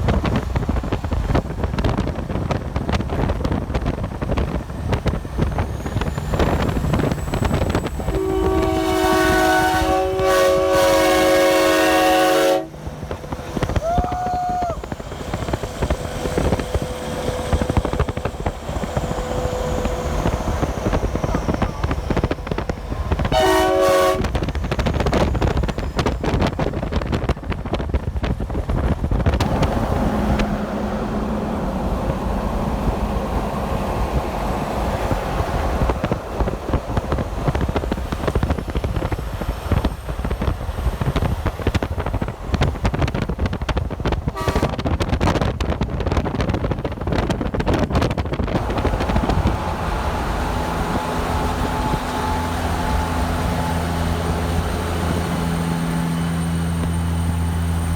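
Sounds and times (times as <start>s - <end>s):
highway traffic passing: 0.0s - 42.7s, 48.0s - 57.9s
heavy vehicles rumbling: 0.0s - 57.9s
multi-note train horn blast: 7.6s - 13.7s, 22.2s - 24.8s, 44.3s - 44.9s, 48.6s - 57.6s.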